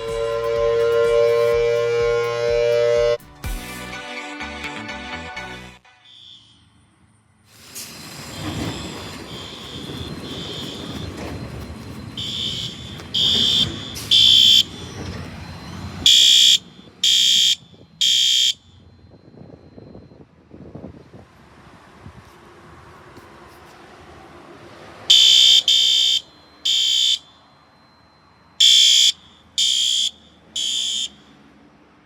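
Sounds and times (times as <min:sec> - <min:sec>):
fire alarm horns beeping: 0:00.0 - 0:03.2, 0:05.8 - 0:06.9, 0:08.3 - 0:20.2, 0:25.1 - 0:31.3.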